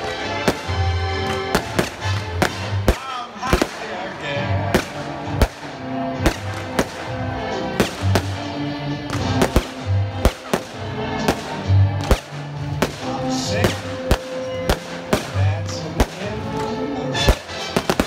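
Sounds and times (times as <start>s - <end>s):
firework shells bursting: 0.0s - 3.9s
loud music: 0.0s - 18.0s.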